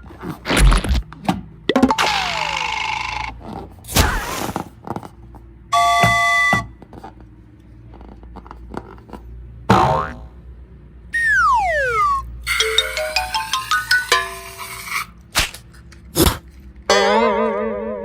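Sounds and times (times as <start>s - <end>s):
hiss with falling whistle: 11.2s - 12.8s
chime-like tone: 12.5s - 14.8s.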